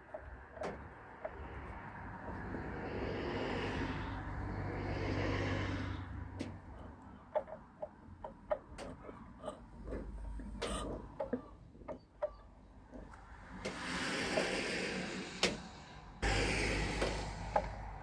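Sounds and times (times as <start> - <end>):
outboard motor knocking: 16.2 - 18.0.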